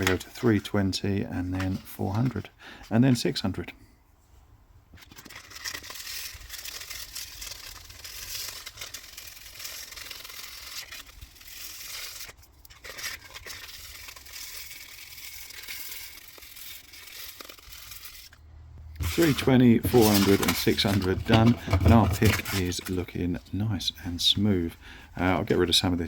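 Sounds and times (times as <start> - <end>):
sandpaper rasping on plastic: 5.1 - 18.4, 19.0 - 22.9.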